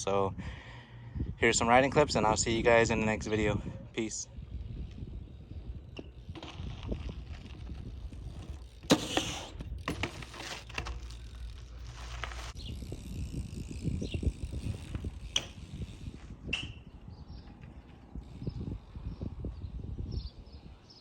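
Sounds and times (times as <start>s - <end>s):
bike wheels rolling rumble: 0.4s - 21.0s
bike scraping: 2.6s - 18.6s.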